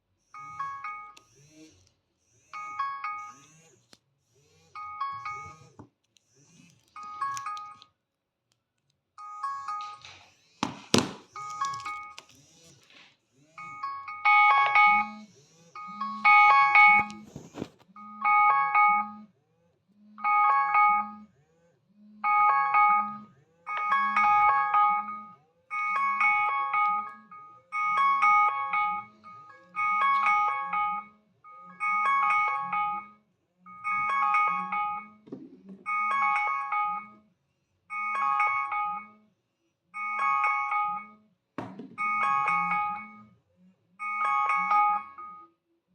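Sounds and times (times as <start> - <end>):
phone alarm chiming tones: 4.8 - 5.8, 13.6 - 17.4, 18.0 - 19.3, 20.2 - 21.3, 22.2 - 37.2, 37.9 - 39.2, 40.0 - 43.3, 44.0 - 45.5.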